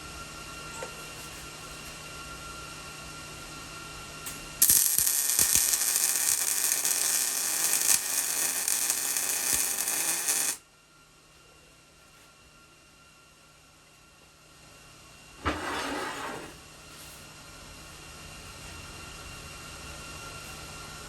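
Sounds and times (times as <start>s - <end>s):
welder arc crackling and sizzling: 4.3s - 10.6s.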